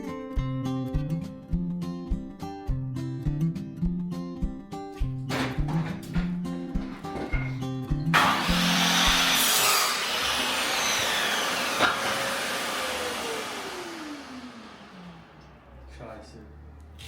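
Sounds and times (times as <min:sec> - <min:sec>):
guitar music: 0:00.0 - 0:09.4
electric motor whining: 0:08.2 - 0:15.6.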